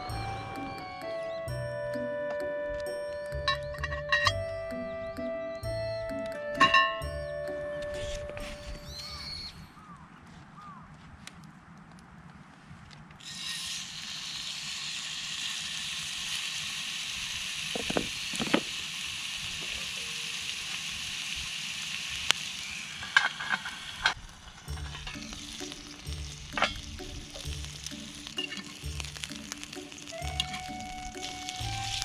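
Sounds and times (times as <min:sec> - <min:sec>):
background music with held notes: 0:00.0 - 0:09.0, 0:24.2 - 0:32.0
metal clicking on pan: 0:03.5 - 0:04.4, 0:06.6 - 0:07.1
steak sizzling in skillet: 0:13.2 - 0:32.0.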